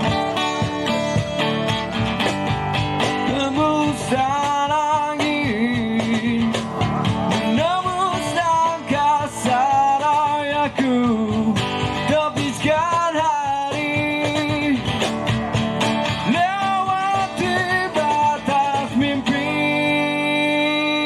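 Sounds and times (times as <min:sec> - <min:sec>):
sliding lead melody: 0:00.0 - 0:04.6
drums: 0:00.0 - 0:21.0
strummed guitar: 0:00.0 - 0:21.0.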